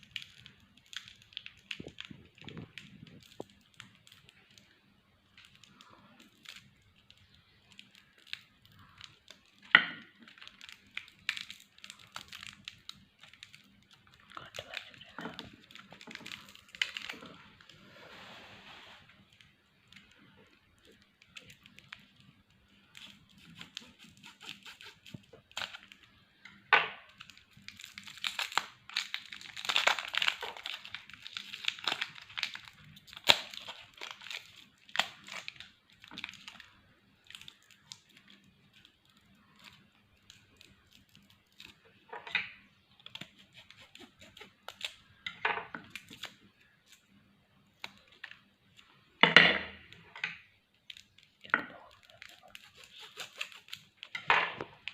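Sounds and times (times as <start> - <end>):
plastic wrappers crinkling and tearing: 0.0 - 17.9, 19.2 - 26.2, 27.1 - 47.1, 47.7 - 49.0, 50.7 - 54.9.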